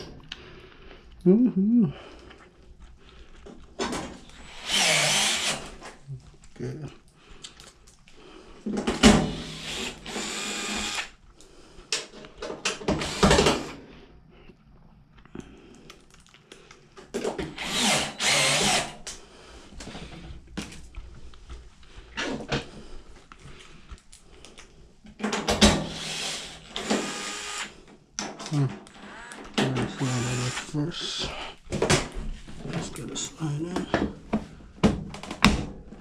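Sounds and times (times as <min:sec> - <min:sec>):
power drill driving screws: 0:04.3 - 0:06.0, 0:09.1 - 0:11.1, 0:12.8 - 0:13.8, 0:17.4 - 0:19.1, 0:25.6 - 0:27.8, 0:28.8 - 0:31.1.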